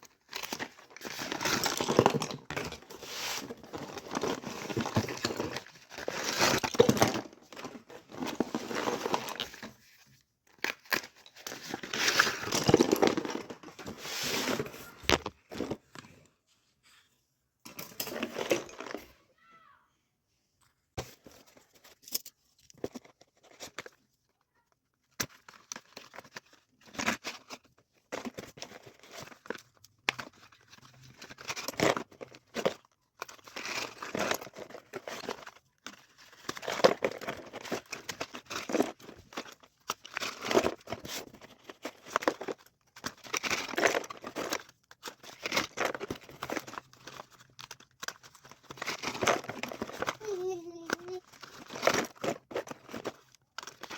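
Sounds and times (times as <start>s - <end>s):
packaging crinkling and tearing: 0.0s - 9.7s, 28.3s - 53.9s.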